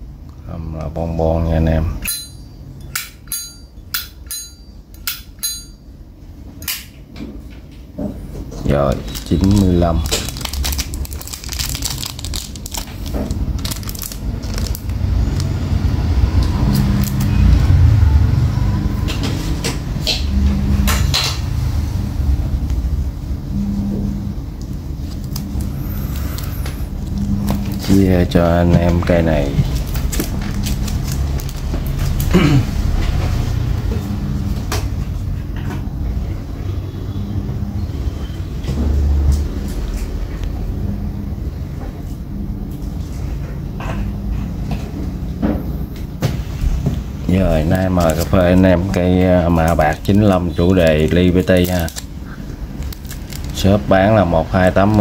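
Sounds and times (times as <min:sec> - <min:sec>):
traffic rumble: 0:00.0 - 0:55.0
steady low rumble: 0:08.9 - 0:36.4.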